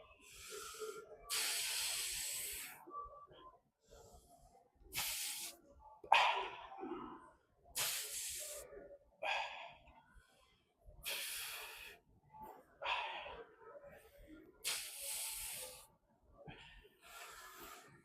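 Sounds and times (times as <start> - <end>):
man breathing hard: 0.2 - 2.8, 11.0 - 12.0, 14.6 - 15.8.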